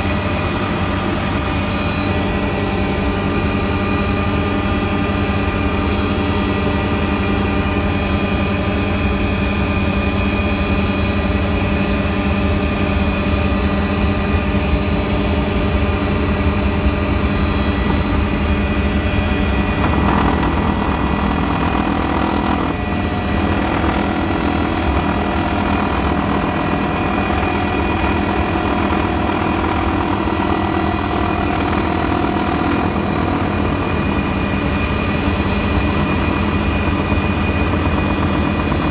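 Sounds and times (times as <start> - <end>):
helicopter engine and rotor drone: 0.0 - 38.9.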